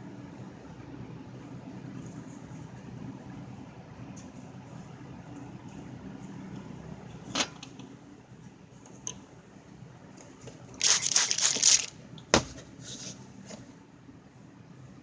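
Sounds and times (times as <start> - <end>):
crackling rustle: 10.8 - 11.9.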